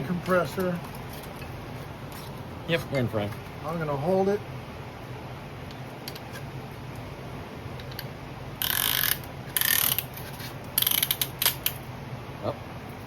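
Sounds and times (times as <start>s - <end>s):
rapid ratchet clicking: 8.6s - 11.8s.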